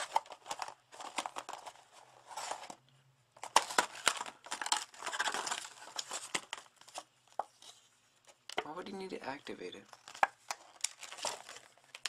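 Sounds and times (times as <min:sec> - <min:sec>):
packaging crinkling: 0:00.0 - 0:02.8, 0:03.4 - 0:07.7, 0:09.8 - 0:12.0.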